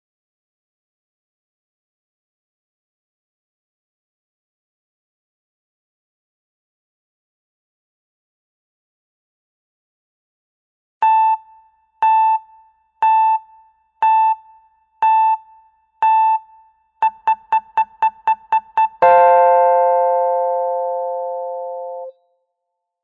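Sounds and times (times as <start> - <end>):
timer beeps: 11.0 - 22.1
electronic chime: 18.7 - 22.1.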